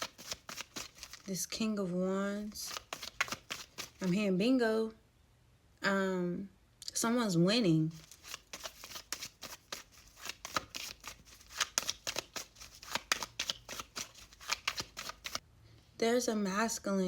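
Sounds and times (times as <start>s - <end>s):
cards being shuffled: 0.0s - 1.3s, 2.5s - 4.2s, 8.0s - 15.4s.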